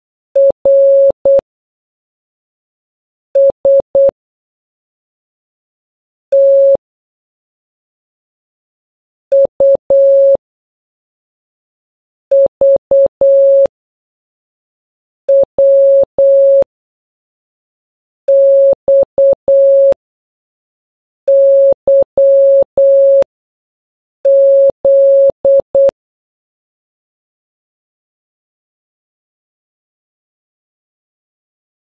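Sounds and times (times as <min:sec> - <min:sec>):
morse code beeps: 0:00.4 - 0:01.4, 0:03.4 - 0:04.1, 0:06.4 - 0:06.8, 0:09.3 - 0:10.4, 0:12.3 - 0:13.7, 0:15.3 - 0:16.7, 0:18.3 - 0:20.0, 0:21.3 - 0:23.2, 0:24.3 - 0:25.9.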